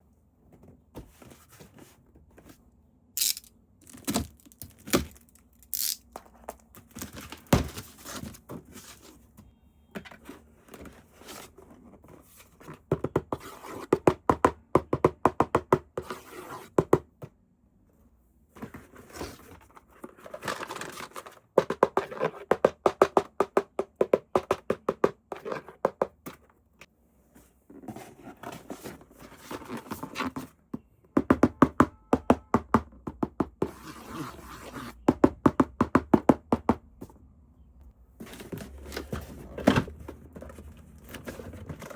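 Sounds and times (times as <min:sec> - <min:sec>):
packaging tearing and crinkling: 0:03.2 - 0:06.0
packaging knocks and thunks: 0:03.4 - 0:05.4, 0:06.6 - 0:08.6.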